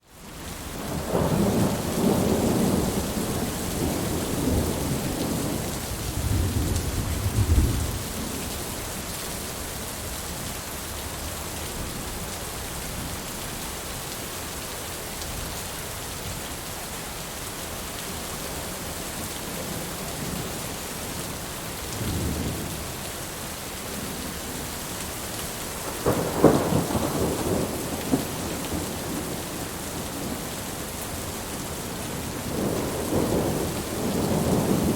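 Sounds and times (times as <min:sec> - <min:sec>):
steady rain falling: 0:00.0 - 0:34.9
thunder rumbling: 0:00.9 - 0:08.4, 0:25.8 - 0:30.6, 0:32.1 - 0:34.9.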